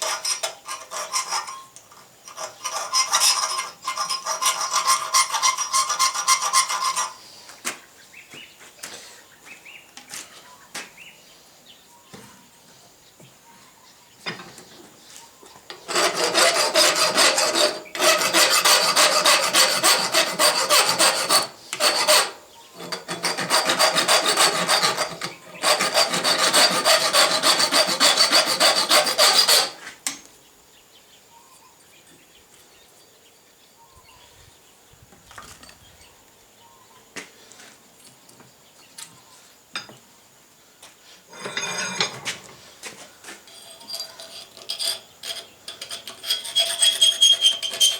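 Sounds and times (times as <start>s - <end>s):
scraping on steel: 0.0s - 7.3s, 15.7s - 30.0s, 41.3s - 47.9s.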